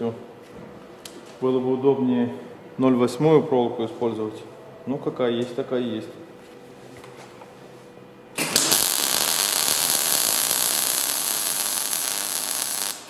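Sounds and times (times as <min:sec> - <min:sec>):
welding arc crackling: 0:08.4 - 0:13.0.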